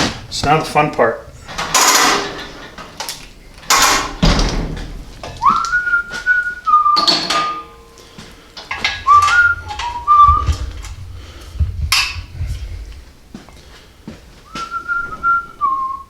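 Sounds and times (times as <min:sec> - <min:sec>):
person whistling a tune: 0:05.4 - 0:07.6, 0:09.0 - 0:10.8, 0:14.4 - 0:16.0.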